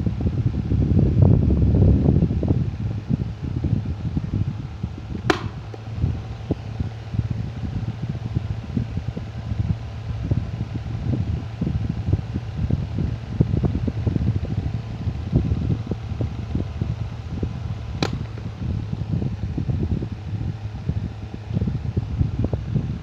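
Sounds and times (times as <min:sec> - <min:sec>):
electric fan humming: 0:00.0 - 0:23.0
fan rattling clatter: 0:00.0 - 0:23.0
sharp click: 0:05.2 - 0:05.8, 0:18.0 - 0:18.5.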